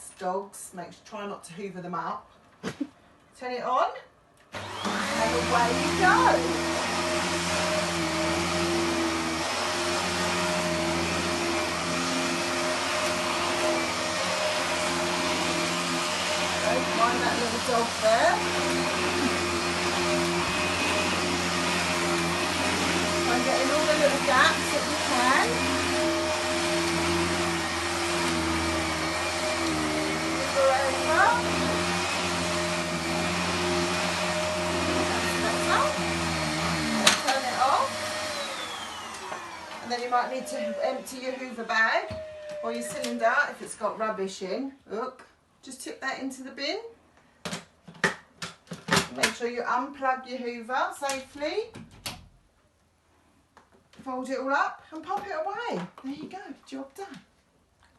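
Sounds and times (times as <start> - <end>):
vacuum cleaner running: 4.5 - 44.1.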